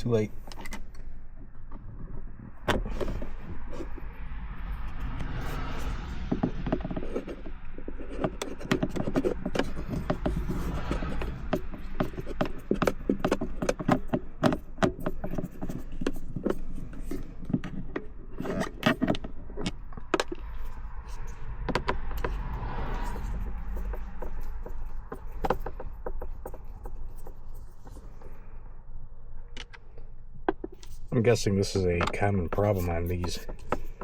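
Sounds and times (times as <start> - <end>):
tool clicking on plastic: 8.0 - 20.6
low steady rumble: 19.2 - 34.0.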